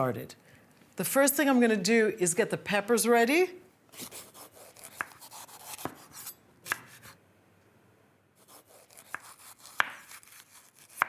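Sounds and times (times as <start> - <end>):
knife slicing peppers: 4.0 - 7.2, 8.4 - 11.0.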